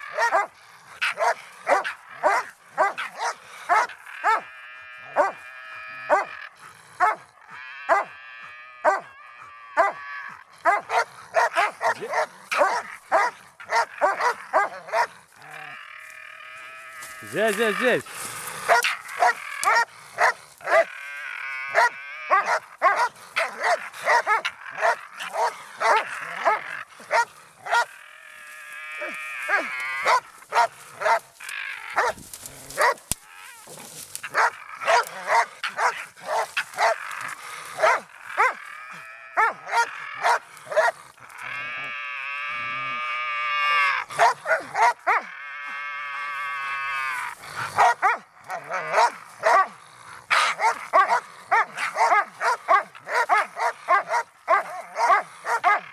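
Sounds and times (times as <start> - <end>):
dog drawn-out cries: 0.0 - 15.8, 18.6 - 28.1, 28.8 - 55.9
dog barking rapidly: 0.1 - 4.4, 5.2 - 5.4, 7.0 - 7.2, 7.9 - 8.1, 8.8 - 9.1, 10.6 - 15.1, 18.7 - 20.9, 21.8 - 27.9, 29.5 - 31.2, 32.0 - 32.2, 32.8 - 33.0, 34.3 - 37.0, 37.8 - 38.6, 39.4 - 41.0, 44.2 - 45.3, 47.7 - 55.9.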